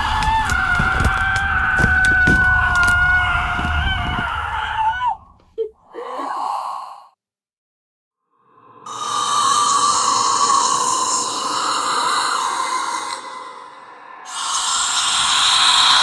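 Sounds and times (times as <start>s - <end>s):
breathy sigh-like sounds: 5.4s - 7.2s.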